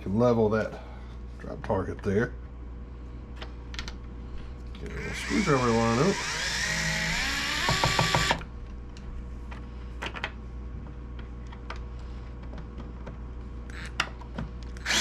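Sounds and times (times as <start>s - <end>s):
power screwdriver whine: 4.9s - 8.4s, 14.8s - 15.0s.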